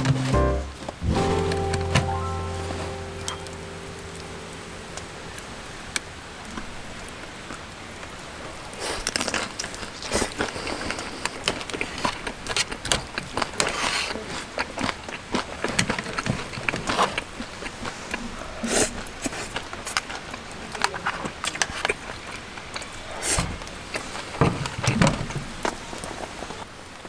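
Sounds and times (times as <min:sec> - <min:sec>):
rain hiss: 0:00.0 - 0:06.1.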